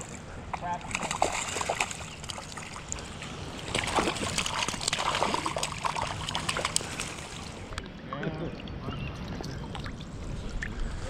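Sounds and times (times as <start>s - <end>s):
creek water trickling: 0.0s - 11.0s
splashes in water: 0.5s - 7.7s.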